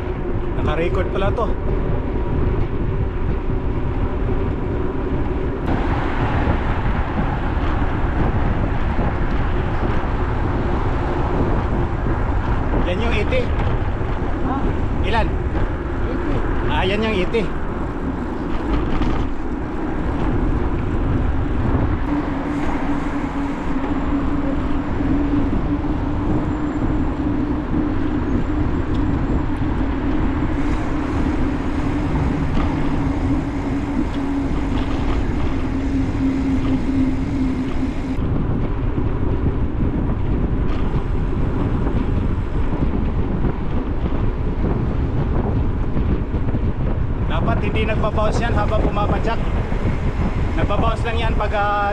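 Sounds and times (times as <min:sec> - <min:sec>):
bicycle road noise: 0:00.0 - 0:51.9
wind rushing over microphone: 0:00.0 - 0:51.9
steady hum: 0:17.6 - 0:40.1.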